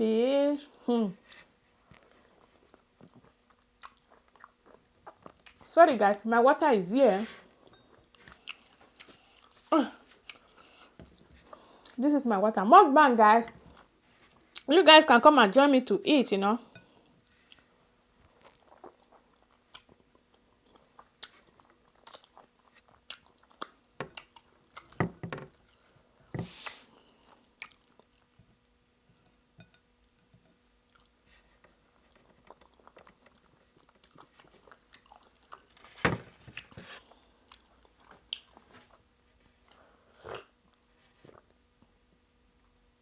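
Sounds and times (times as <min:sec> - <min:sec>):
wet chewing: 0:02.2 - 0:05.7, 0:08.1 - 0:12.0, 0:17.4 - 0:25.0, 0:30.8 - 0:35.8.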